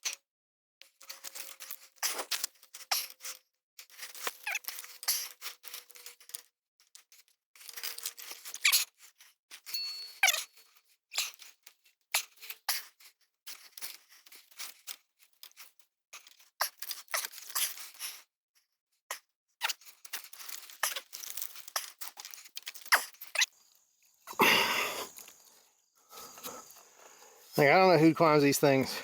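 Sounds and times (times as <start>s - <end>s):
clothing and gear rustling: 19.6s - 27.7s.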